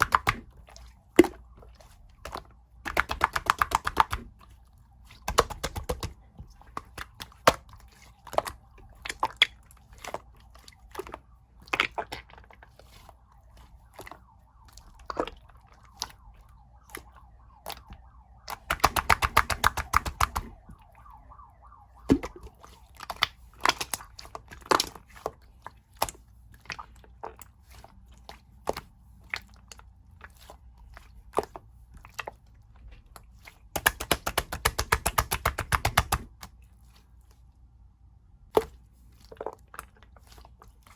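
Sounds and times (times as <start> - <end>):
slime squeezed by hand: 5.1 - 25.4.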